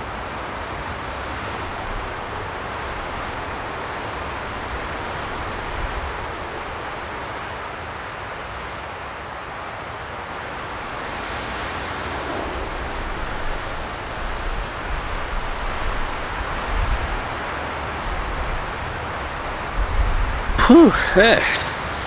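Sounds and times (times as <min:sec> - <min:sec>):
strong wind blowing: 0:10.9 - 0:17.3
wind buffeting microphone: 0:11.1 - 0:17.4.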